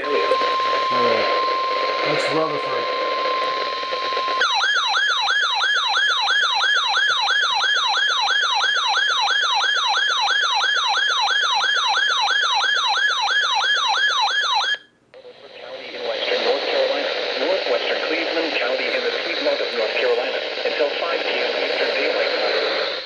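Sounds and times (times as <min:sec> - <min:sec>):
radio hiss: 0:00.0 - 0:04.4, 0:15.2 - 0:23.0
weather radio alert tone: 0:00.0 - 0:04.5
electronic siren alert whooping: 0:00.0 - 0:14.8.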